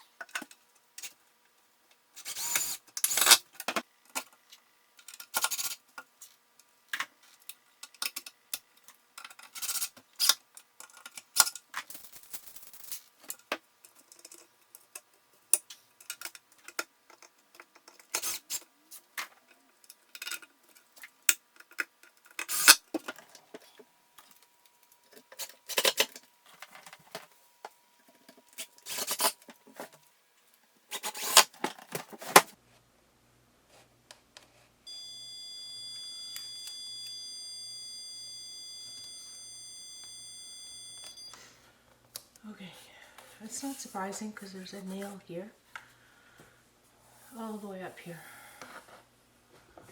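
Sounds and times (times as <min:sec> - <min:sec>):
tools clicking and clattering: 0:07.8 - 0:18.7, 0:25.0 - 0:27.2
quiet rustling: 0:43.2 - 0:45.4.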